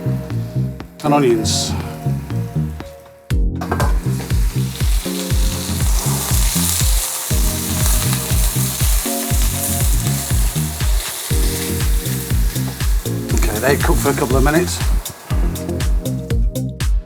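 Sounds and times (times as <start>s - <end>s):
background music with bass line: 0.0s - 17.0s
mushrooms and onions sizzling in pan: 3.9s - 16.4s.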